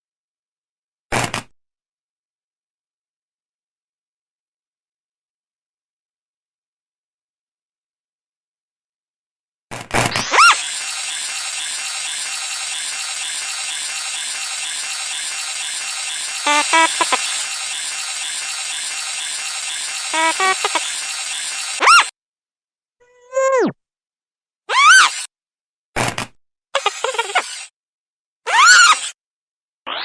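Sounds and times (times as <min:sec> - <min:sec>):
robot chirps: 0:10.2 - 0:22.1
whirring ratchety motor drone: 0:10.3 - 0:22.1.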